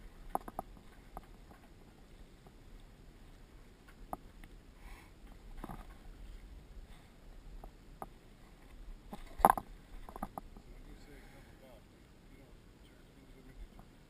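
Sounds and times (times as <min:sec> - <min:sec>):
low steady rumble: 0:00.0 - 0:14.0.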